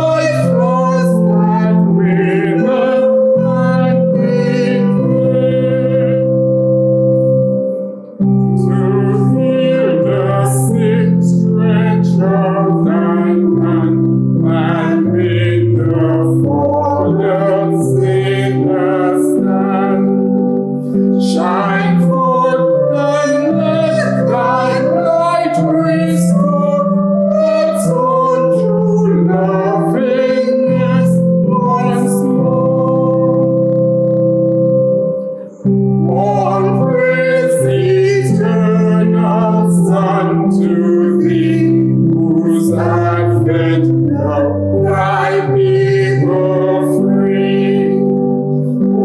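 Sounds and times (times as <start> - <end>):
held instrumental chords: 0.0 - 49.0
woman singing a hymn: 21.2 - 26.8.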